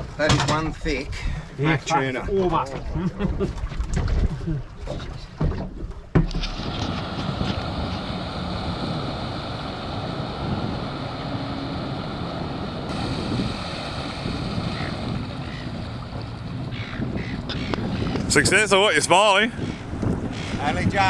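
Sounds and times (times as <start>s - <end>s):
wind buffeting microphone: 6.2s - 21.0s
boat motor drone: 6.3s - 21.0s
water rushing past: 6.3s - 21.0s.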